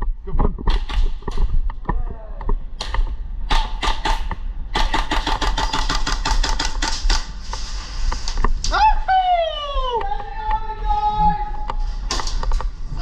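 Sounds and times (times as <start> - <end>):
airsoft rifle firing: 2.8 - 7.4.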